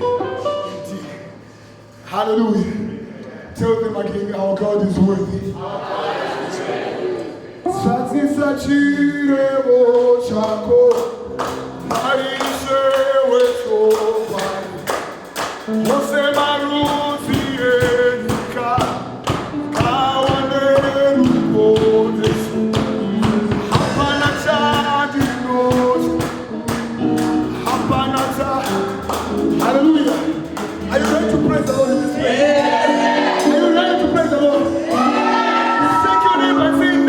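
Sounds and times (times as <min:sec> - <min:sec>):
gospel band playing: 0:00.0 - 0:37.0
people singing: 0:05.4 - 0:10.3, 0:19.8 - 0:26.6, 0:27.5 - 0:37.0
dense percussion: 0:10.0 - 0:32.3.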